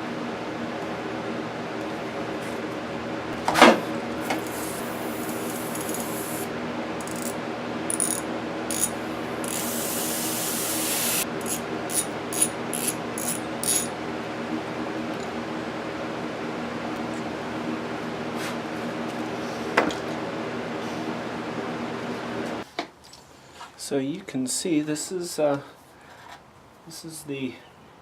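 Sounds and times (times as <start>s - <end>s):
steady hum: 0.0s - 22.6s
socket ratchet clicking: 7.9s - 9.8s.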